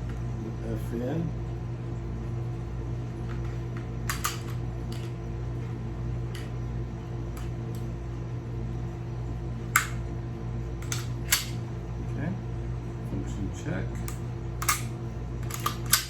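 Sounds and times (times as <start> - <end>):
fan-like hum: 0.0 - 16.0
pistol parts clicking: 4.1 - 5.1, 10.8 - 11.6, 14.0 - 16.0.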